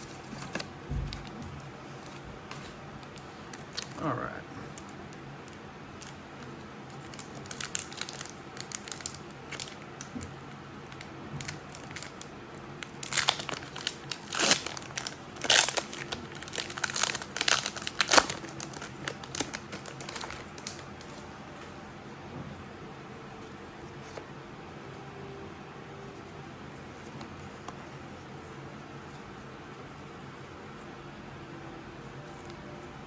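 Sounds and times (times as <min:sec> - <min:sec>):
foil wrapper tearing and crinkling: 0:03.0 - 0:04.1, 0:07.0 - 0:09.9, 0:10.9 - 0:21.1.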